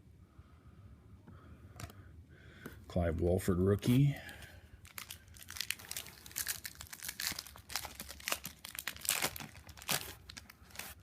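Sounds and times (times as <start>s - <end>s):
foil wrapper crinkling: 4.8s - 11.0s.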